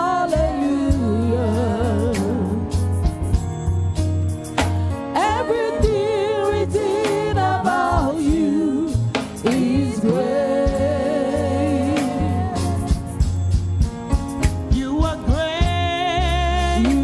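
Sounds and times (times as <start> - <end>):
person singing with vibrato: 0.0 - 3.0, 5.1 - 13.2, 14.7 - 17.0
band with bass and drums: 0.0 - 17.0.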